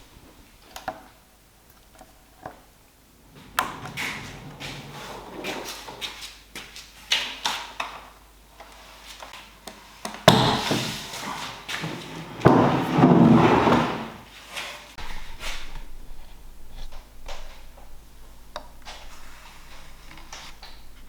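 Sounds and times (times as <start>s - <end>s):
scraping and creaking wood: 11.7s - 14.2s.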